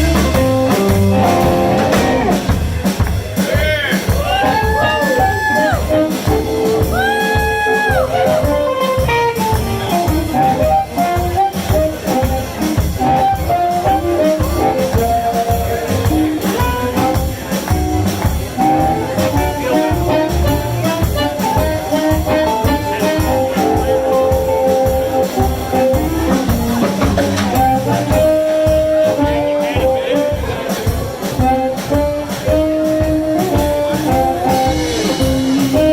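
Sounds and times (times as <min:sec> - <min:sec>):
lead instrument solo: 0:00.0 - 0:03.0, 0:04.0 - 0:35.9
live blues band playing: 0:00.0 - 0:35.9
steady drum beat: 0:00.0 - 0:35.9.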